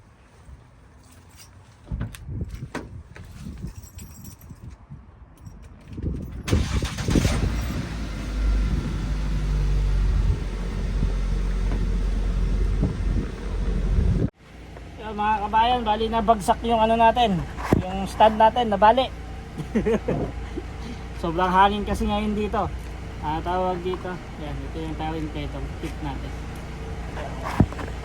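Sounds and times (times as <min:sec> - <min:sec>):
wind buffeting microphone: 0:01.8 - 0:14.4
handling knocks and clatter: 0:26.5 - 0:28.0.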